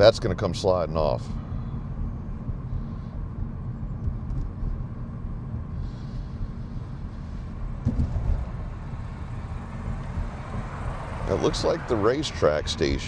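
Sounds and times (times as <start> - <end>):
car engine and road noise: 0.0 - 13.0
car bump: 7.8 - 8.7.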